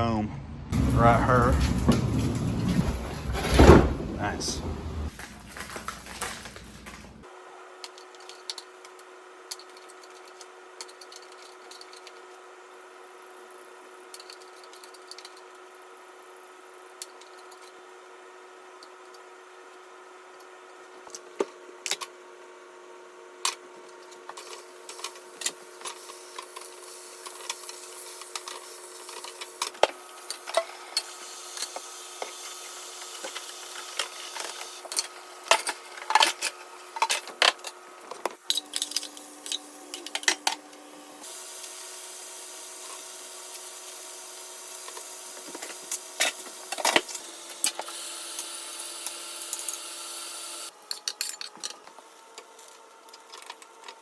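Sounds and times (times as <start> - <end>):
utensils and dishes clicking and scraping: 5.1 - 7.2, 24.2 - 40.6, 50.8 - 54.0.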